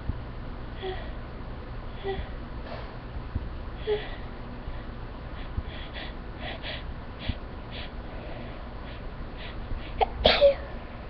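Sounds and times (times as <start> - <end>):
person breathing and sniffing: 4.7 - 10.1.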